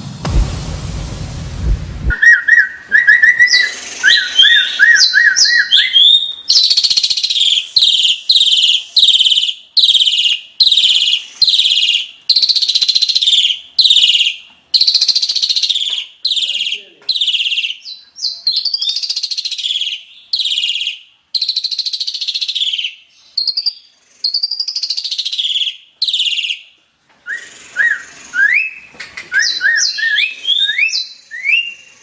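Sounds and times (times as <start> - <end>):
intro music: 0.0 - 4.5
starling singing: 2.1 - 26.7, 27.3 - 32.0.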